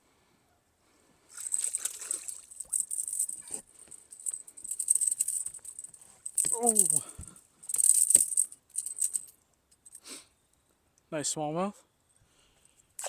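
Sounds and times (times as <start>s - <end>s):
fish splashing at the surface: 1.3s - 3.0s
rattling and clicking: 1.4s - 10.0s.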